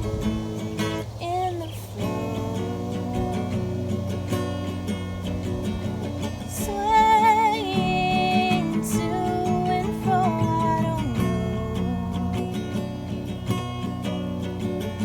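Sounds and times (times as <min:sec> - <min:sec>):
acoustic guitar strumming: 0:00.0 - 0:15.0
person singing with vibrato: 0:01.2 - 0:04.5, 0:06.4 - 0:13.2.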